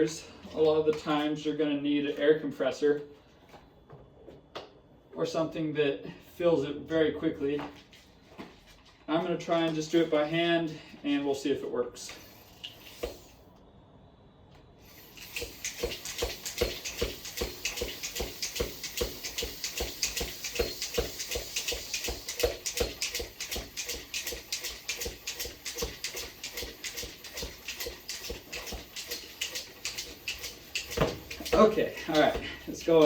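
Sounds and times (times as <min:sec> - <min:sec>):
hand pump strokes: 0:12.1 - 0:13.4, 0:14.8 - 0:33.0.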